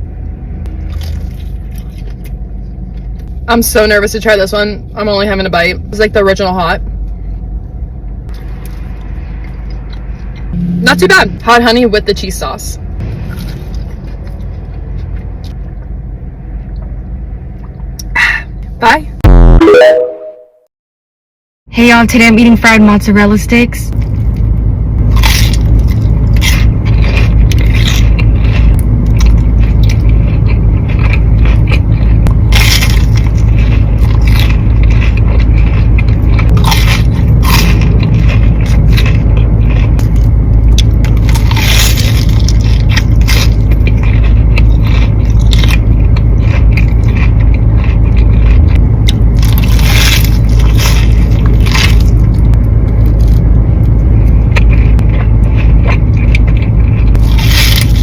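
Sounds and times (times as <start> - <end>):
crunchy bites and chewing: 0.0 - 3.4, 8.2 - 11.1, 13.0 - 16.0, 24.0 - 58.0
steady low hum: 0.0 - 20.6, 21.7 - 58.0.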